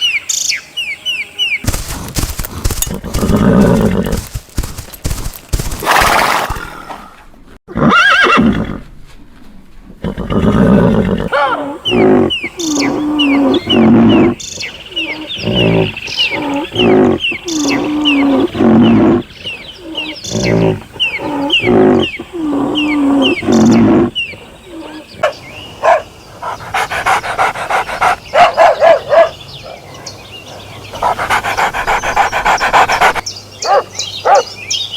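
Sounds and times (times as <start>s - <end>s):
dog panting fast: 1.7s - 5.8s, 26.4s - 28.6s, 30.9s - 33.3s
horse whinnying: 2.6s - 4.3s, 7.7s - 8.8s.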